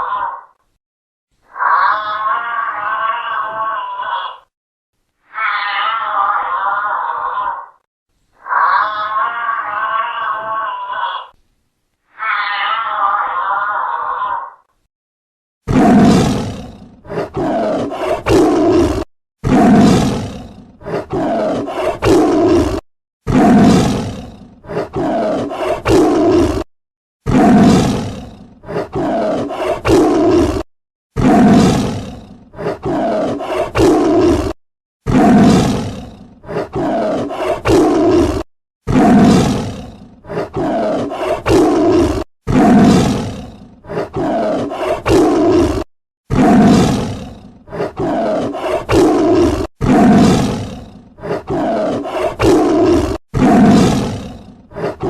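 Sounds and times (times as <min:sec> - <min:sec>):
tiger roaring: 0:15.7 - 0:55.0.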